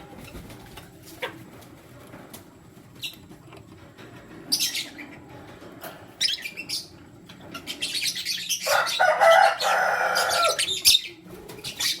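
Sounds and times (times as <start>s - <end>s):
lovebirds chirping: 6.2s - 12.0s.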